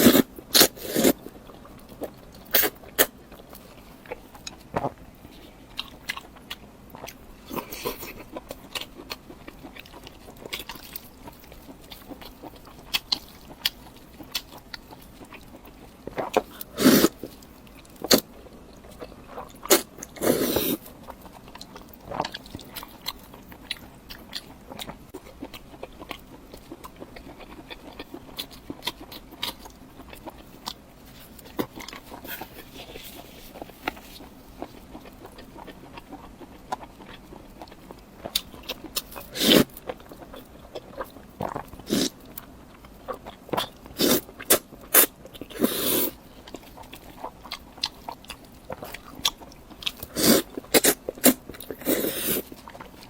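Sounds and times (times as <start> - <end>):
chewing and biting: 0.0 - 53.0
slurps: 19.7 - 20.8, 50.1 - 52.6.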